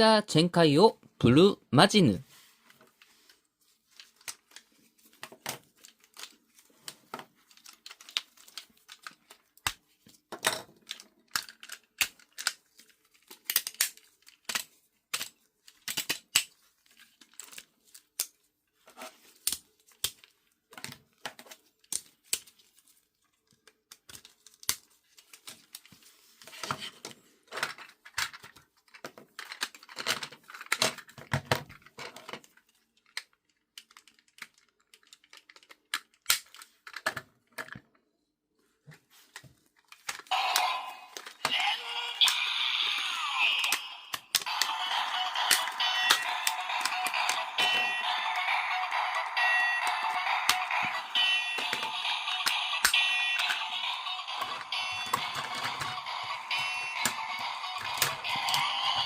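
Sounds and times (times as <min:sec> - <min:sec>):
plastic toy parts clicking: 0:05.3 - 0:09.8, 0:10.4 - 0:18.4, 0:19.3 - 0:22.6, 0:23.5 - 0:25.9, 0:27.5 - 0:37.8, 0:39.8 - 0:42.5, 0:43.5 - 0:59.0.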